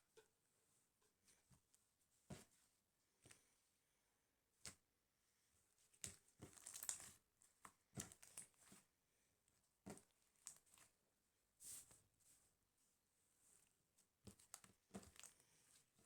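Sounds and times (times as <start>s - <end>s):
faint crinkling and rustling: 5.8s - 9.0s, 9.8s - 11.0s, 11.6s - 16.0s.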